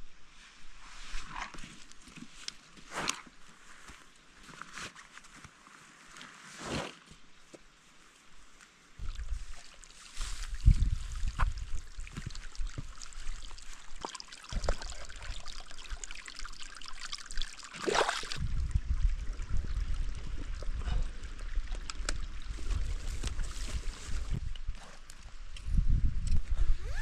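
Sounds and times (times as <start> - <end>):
stream trickling: 8.9 - 24.7
low rumbling: 18.4 - 23.4.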